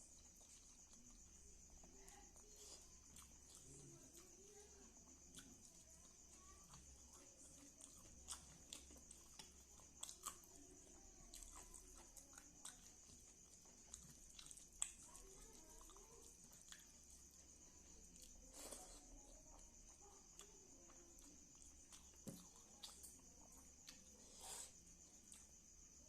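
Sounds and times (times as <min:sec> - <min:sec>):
chewing and lip smacks: 0:05.0 - 0:25.6.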